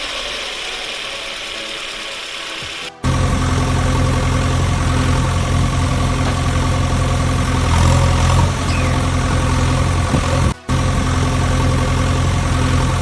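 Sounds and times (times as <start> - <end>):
engine idling: 2.9 - 13.0.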